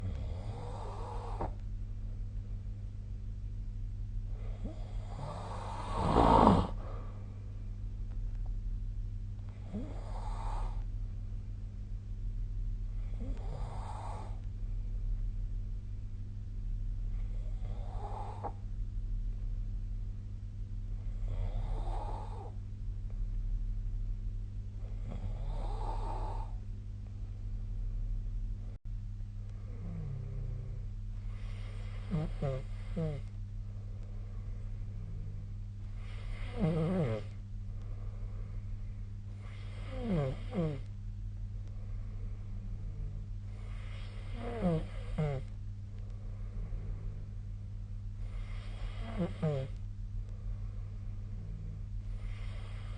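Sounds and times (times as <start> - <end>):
person snoring: 0.0 - 1.6, 4.3 - 7.1, 9.6 - 10.9, 21.1 - 22.6, 24.8 - 26.6, 29.7 - 33.3, 36.0 - 37.4, 39.4 - 40.9, 42.8 - 45.5, 48.2 - 49.8
steady low hum: 0.0 - 52.9.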